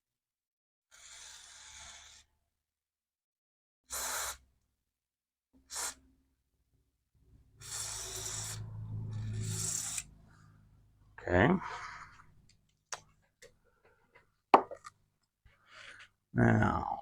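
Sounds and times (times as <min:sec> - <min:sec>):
aerosol spray hissing: 0:05.7 - 0:06.0, 0:07.6 - 0:08.6
low hum: 0:08.2 - 0:11.2.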